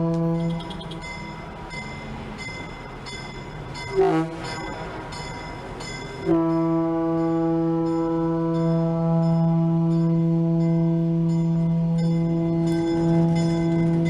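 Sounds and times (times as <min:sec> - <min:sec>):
locomotive air horn blasts: 0:00.0 - 0:01.0, 0:04.0 - 0:04.6, 0:06.2 - 0:14.0.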